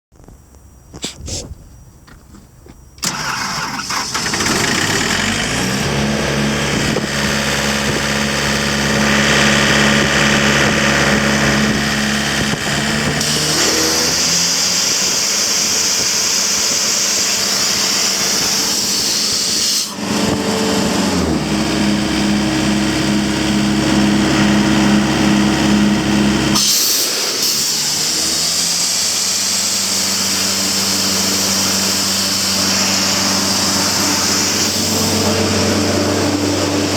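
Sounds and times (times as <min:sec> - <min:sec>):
air compressor engine running: 0:01.0 - 0:36.9
loud high hiss: 0:13.2 - 0:20.0, 0:26.6 - 0:36.9.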